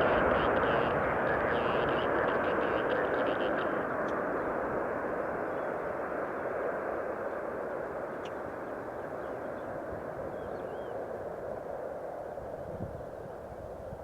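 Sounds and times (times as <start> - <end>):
jet engine rush: 0.0 - 14.0.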